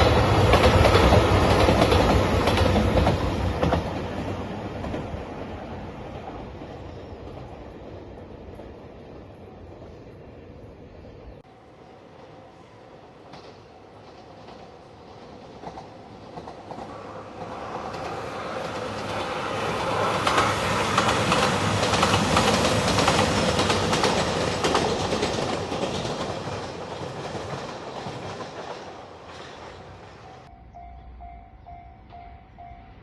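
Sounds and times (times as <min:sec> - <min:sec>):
diesel train passing: 0:00.0 - 0:33.0
wheels clattering over rail joints: 0:13.3 - 0:30.5.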